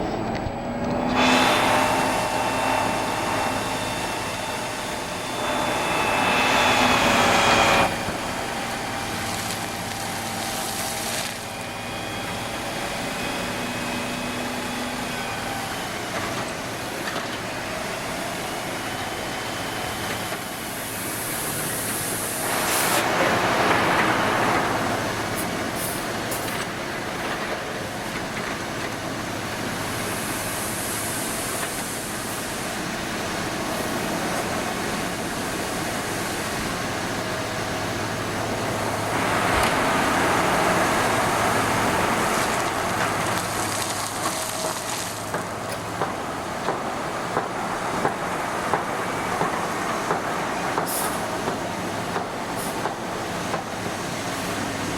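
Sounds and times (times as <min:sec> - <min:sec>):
whining tones: 0:00.0 - 0:25.2
heavy machinery engine drone: 0:00.0 - 0:54.9
loud hiss: 0:01.2 - 0:11.6, 0:19.2 - 0:26.5, 0:29.7 - 0:46.0.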